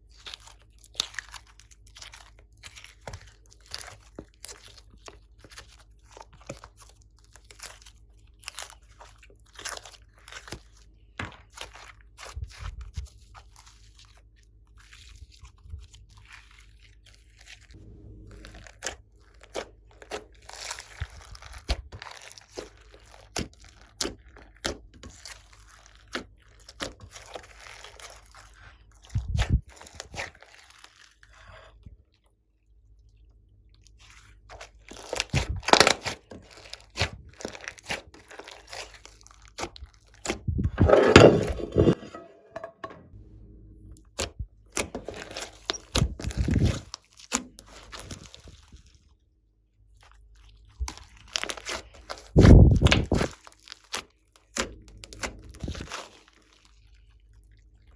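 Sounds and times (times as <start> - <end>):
slime crackling and popping: 34.5 - 40.4.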